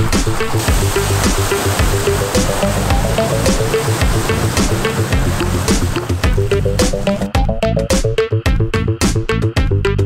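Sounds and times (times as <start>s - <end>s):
regular beat: 0.0s - 9.8s
steady bass line: 0.0s - 10.0s
rippling synthesizer notes: 0.3s - 8.2s.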